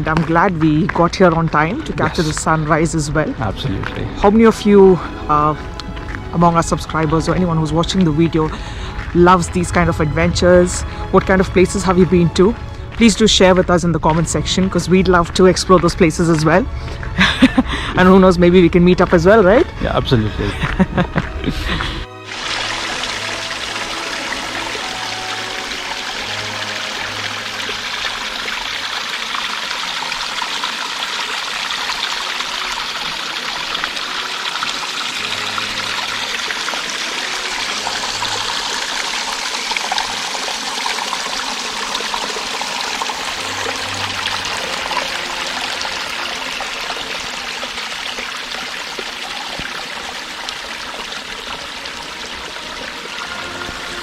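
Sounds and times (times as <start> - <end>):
small waterfall splashing: 14.1 - 54.0.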